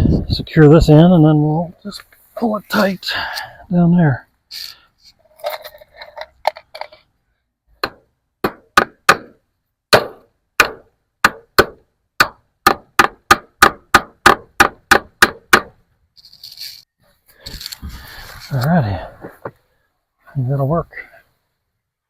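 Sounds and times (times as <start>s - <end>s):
hammer striking staples into wood: 7.8s - 15.8s.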